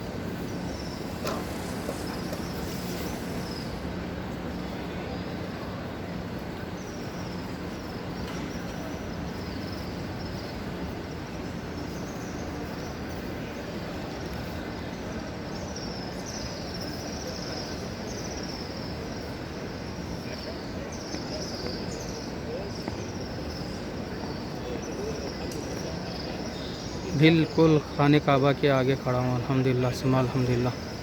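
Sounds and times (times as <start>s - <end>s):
crowd murmuring and praying: 23.6s - 31.0s.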